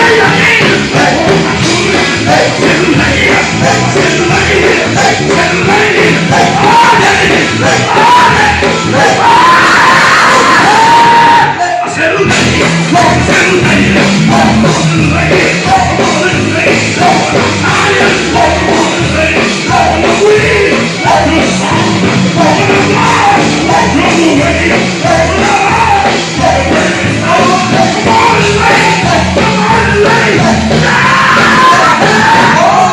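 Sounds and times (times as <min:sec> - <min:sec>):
band playing steady beat: 0:00.0 - 0:32.9
live gospel music: 0:00.0 - 0:32.9
voices singing and shouting: 0:00.0 - 0:32.9.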